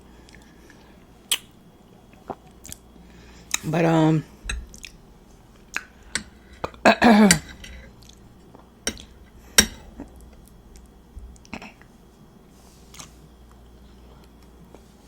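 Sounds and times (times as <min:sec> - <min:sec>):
cutlery clinking on a plate: 0:08.9 - 0:09.9.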